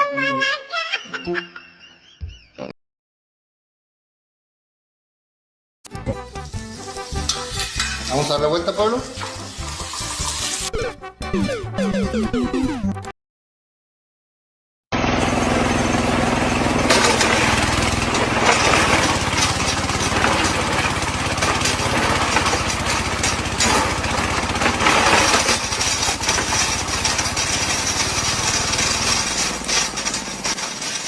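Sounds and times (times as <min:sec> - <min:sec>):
motorized machine rattling: 0:06.4 - 0:10.7, 0:15.1 - 0:31.0.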